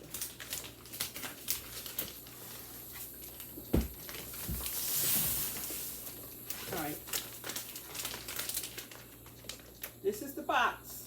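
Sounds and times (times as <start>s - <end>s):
cardboard rustling scrape: 4.3s - 6.1s.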